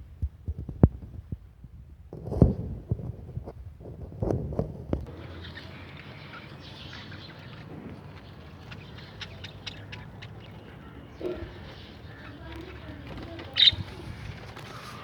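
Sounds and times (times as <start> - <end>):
parrots chirping faintly: 5.1 - 15.0.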